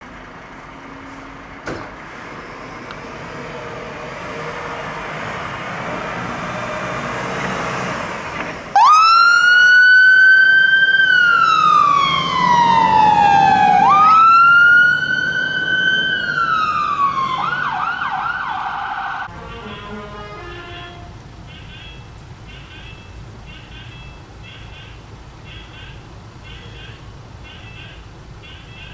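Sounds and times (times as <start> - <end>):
fire engine engine noise: 0.0 - 28.9
fire engine siren wailing and yelping: 8.2 - 28.9.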